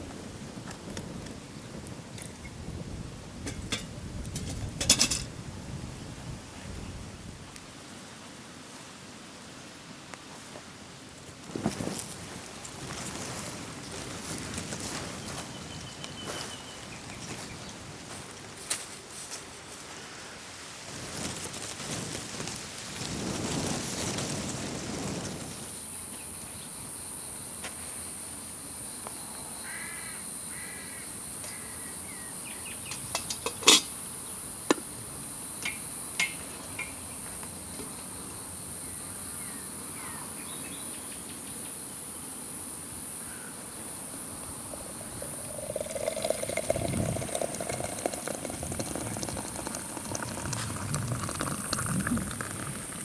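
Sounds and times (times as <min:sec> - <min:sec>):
high insect drone: 0:25.5 - 0:53.0.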